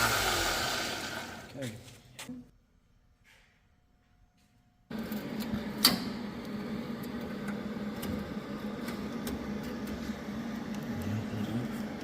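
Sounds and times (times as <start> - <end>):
machine hum: 4.9 - 12.0.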